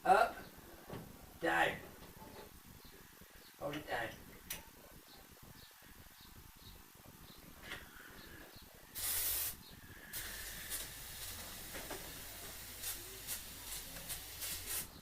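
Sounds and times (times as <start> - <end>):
hissing spray: 8.9 - 15.0.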